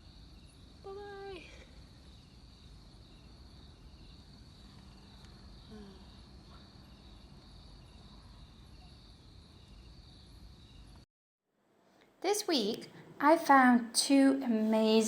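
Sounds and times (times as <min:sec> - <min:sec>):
insects trilling: 0:00.0 - 0:11.0.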